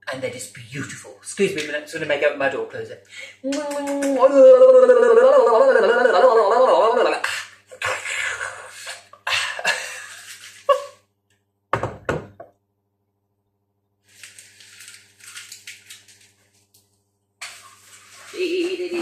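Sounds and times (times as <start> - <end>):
packaging rustling and scraping: 14.0 - 19.0.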